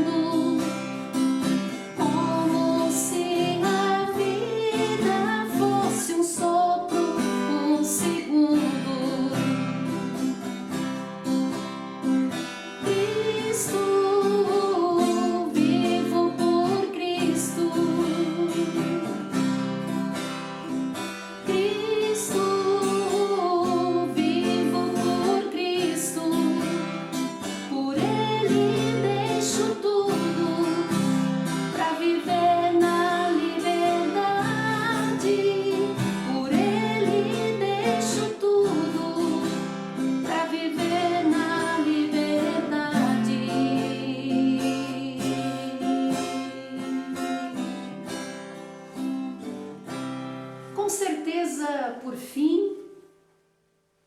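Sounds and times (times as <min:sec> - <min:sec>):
person singing: 0:00.0 - 0:10.0, 0:12.8 - 0:19.5, 0:21.4 - 0:47.9
acoustic guitar: 0:00.0 - 0:54.0.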